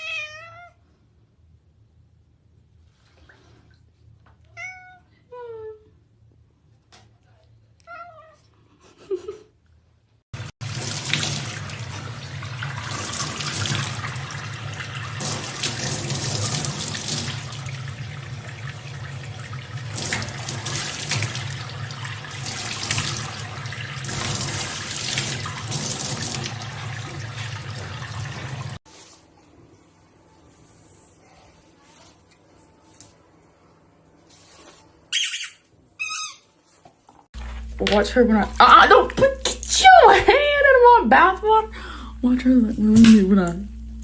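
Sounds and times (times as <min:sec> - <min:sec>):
water running from a tap: 0:10.4 - 0:28.8, 0:37.8 - 0:41.7.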